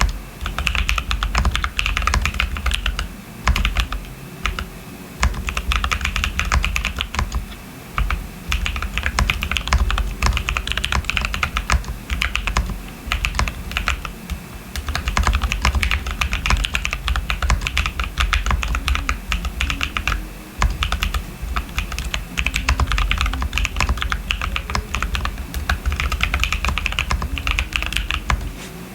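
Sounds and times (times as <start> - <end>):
mechanical keyboard typing: 0.0 - 28.6.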